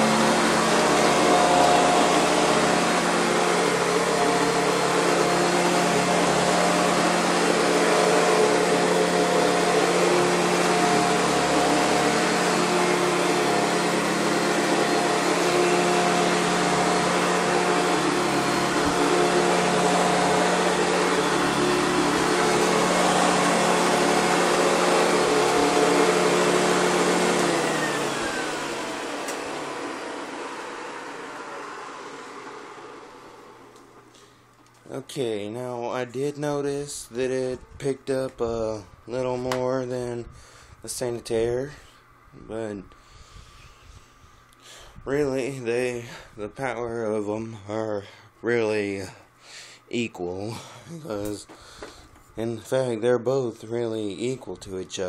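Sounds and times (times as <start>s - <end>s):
upright vacuum cleaner running: 0.0s - 35.5s, 50.5s - 52.4s.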